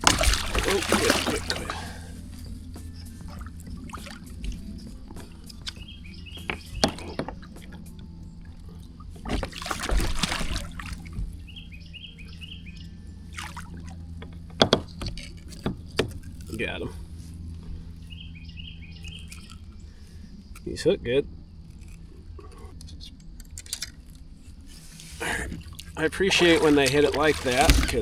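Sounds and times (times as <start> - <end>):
water splashing: 0.0 - 22.8, 23.5 - 28.0
bird singing: 0.0 - 28.0
knocks against a kayak: 14.3 - 16.4, 27.5 - 28.0.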